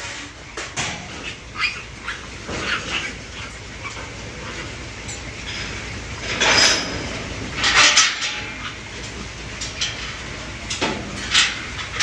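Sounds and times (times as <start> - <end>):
piglets squealing: 1.1 - 4.9.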